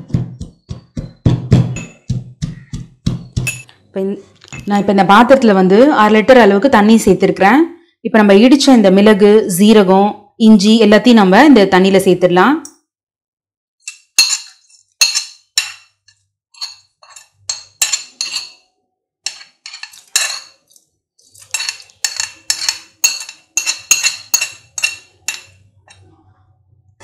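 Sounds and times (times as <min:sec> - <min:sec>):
metal utensils clinking on pot: 0:13.9 - 0:18.6, 0:19.3 - 0:26.0.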